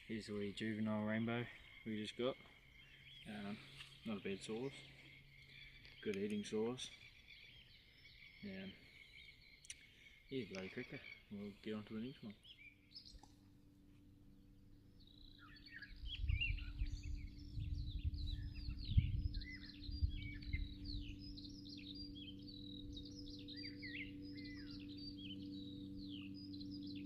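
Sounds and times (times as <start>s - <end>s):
songbirds singing: 0.0s - 27.0s
steady low hum: 0.0s - 27.0s
wind rumble on microphone: 15.6s - 25.2s.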